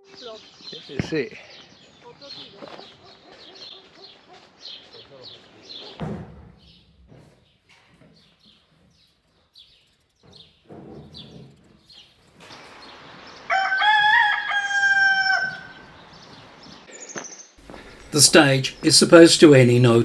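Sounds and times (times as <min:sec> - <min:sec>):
rooster crowing: 0:13.5 - 0:16.0.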